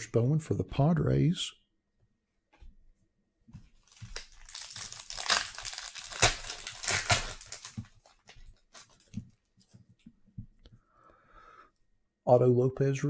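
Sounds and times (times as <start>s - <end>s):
foil wrapper crinkling and tearing: 3.8s - 9.2s.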